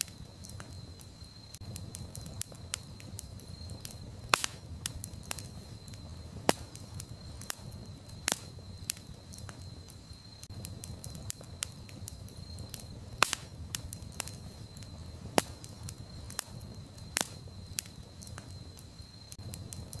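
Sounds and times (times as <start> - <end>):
fire pops: 0.0 - 20.0
low flame rumble: 0.0 - 20.0
wood crackling in fire: 0.0 - 20.0.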